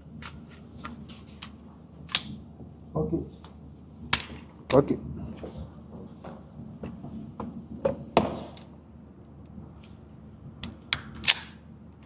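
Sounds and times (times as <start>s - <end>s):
pistol metallic clicks: 11.0s - 11.6s.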